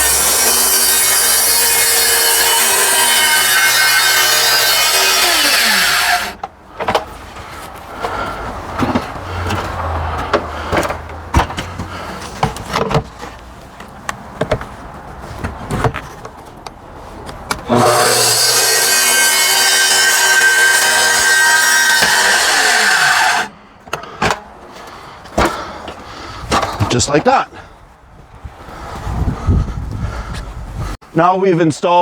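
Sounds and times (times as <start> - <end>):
circular saw cutting sheathing: 0.0 - 6.4, 17.7 - 23.5
track and saw rattling: 0.0 - 7.0, 17.7 - 23.6.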